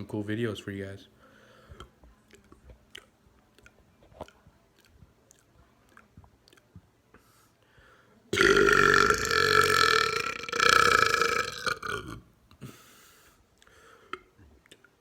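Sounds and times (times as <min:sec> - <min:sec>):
man belching loudly: 0:08.4 - 0:12.3.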